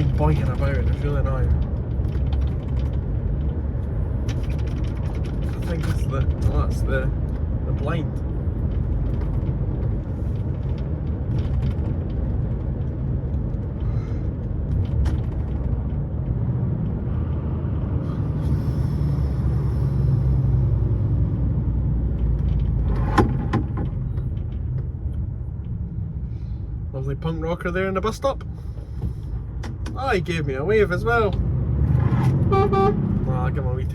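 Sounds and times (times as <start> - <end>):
road noise: 0.0 - 33.9
truck engine rumble: 0.0 - 33.9.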